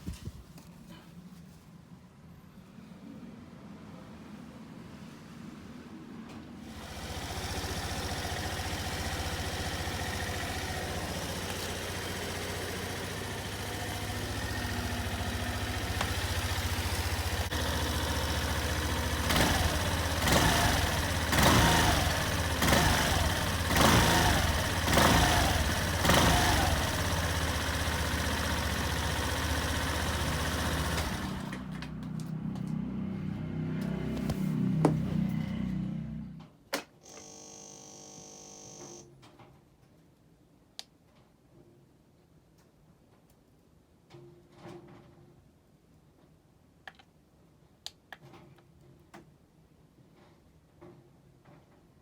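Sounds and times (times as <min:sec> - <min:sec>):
scooter engine revving: 0:06.6 - 0:31.8
scooter engine starting and idling: 0:06.6 - 0:36.4, 0:37.0 - 0:39.0.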